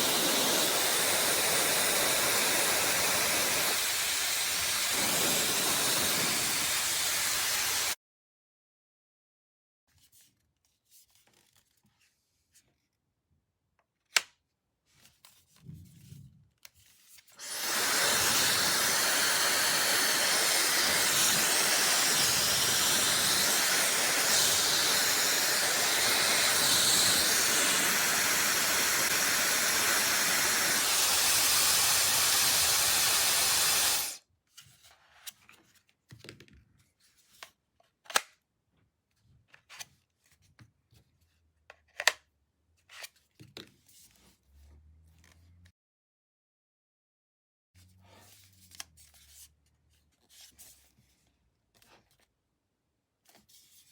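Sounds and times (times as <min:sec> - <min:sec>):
hair dryer blowing: 0:00.0 - 0:08.0, 0:17.4 - 0:34.2
clicks and handling noises: 0:41.7 - 0:43.8.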